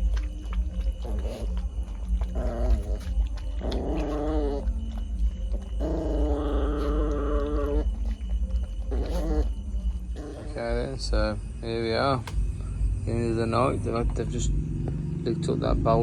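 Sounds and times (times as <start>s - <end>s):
dog howling calls: 0.0s - 11.4s.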